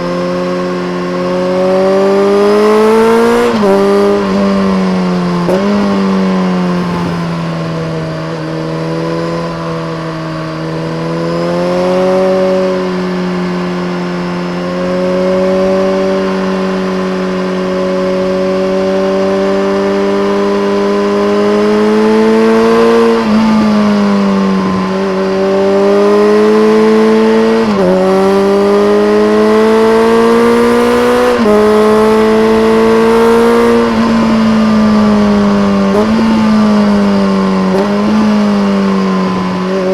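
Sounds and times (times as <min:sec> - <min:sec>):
motorcycle engine revving: 0:01.9 - 0:11.0, 0:17.8 - 0:39.9.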